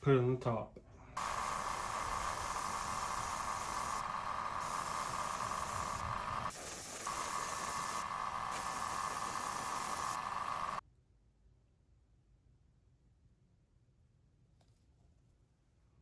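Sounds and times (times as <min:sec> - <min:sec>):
airbrush spraying air hiss: 0:01.2 - 0:10.8.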